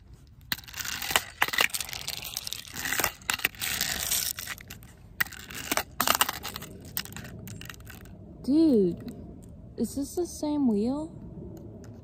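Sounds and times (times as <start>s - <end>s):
wheels scraping over rough pavement: 0.0s - 9.3s.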